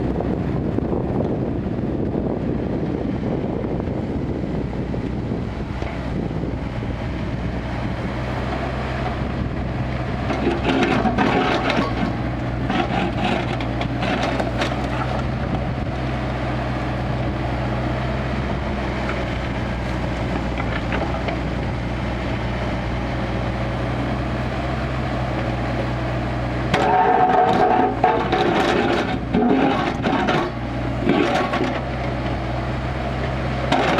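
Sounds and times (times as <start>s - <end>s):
excavator diesel engine hum: 0.0s - 33.9s
excavator knocking: 10.1s - 15.8s, 19.0s - 21.7s, 26.7s - 32.4s, 33.6s - 33.9s.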